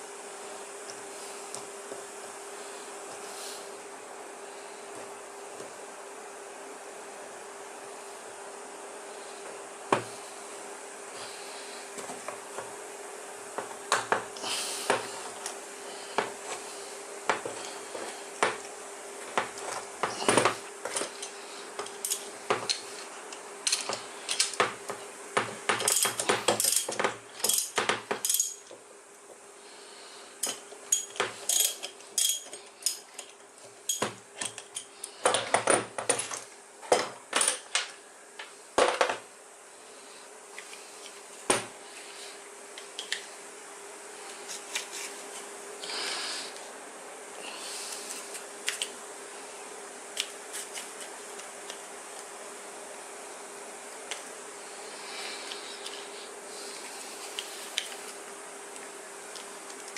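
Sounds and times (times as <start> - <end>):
steady hum: 0.0 - 59.9
metal tools clinking and knocking: 25.8 - 28.7, 30.4 - 33.3.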